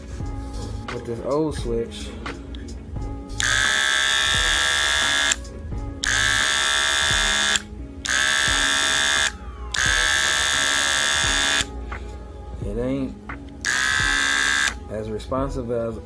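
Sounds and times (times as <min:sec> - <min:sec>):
hair clipper motor buzzing: 0:03.4 - 0:05.4, 0:06.0 - 0:11.7, 0:13.6 - 0:14.8.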